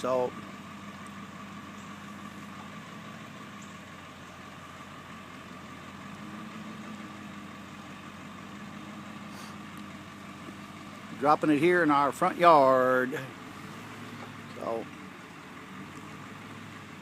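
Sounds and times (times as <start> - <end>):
truck engine idling: 0.0 - 17.0.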